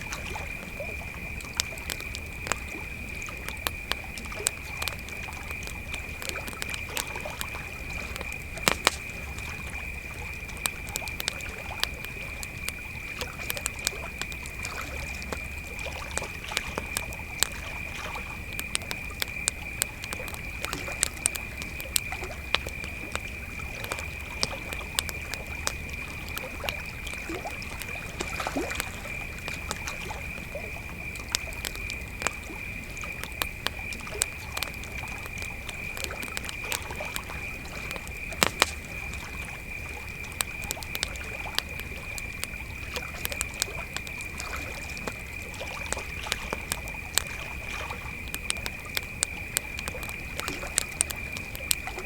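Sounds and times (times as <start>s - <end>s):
campfire crackling and popping: 0.0s - 52.0s
crickets chirping: 0.0s - 52.0s.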